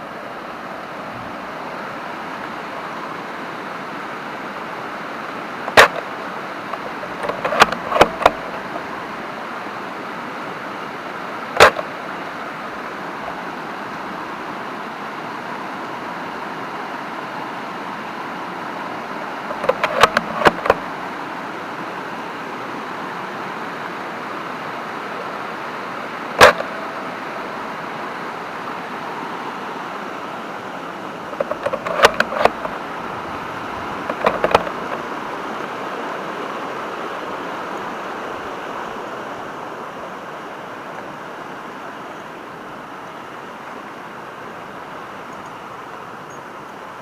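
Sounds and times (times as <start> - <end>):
steady hiss: 0.0 - 47.0
mechanical clicking: 26.4 - 26.8.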